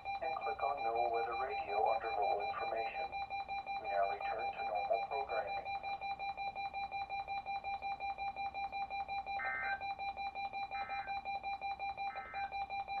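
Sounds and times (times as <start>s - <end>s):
rapid high electronic beeps: 9.3s - 13.0s.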